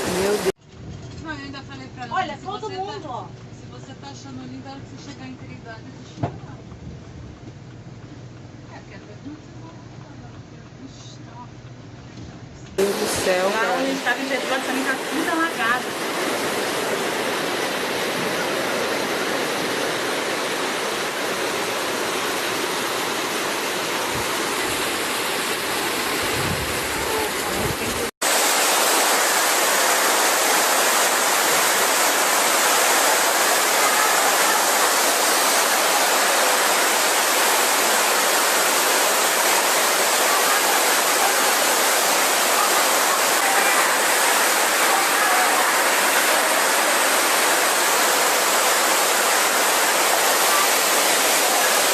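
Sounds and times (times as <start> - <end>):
water rushing: 0.0 - 0.6, 12.8 - 51.9.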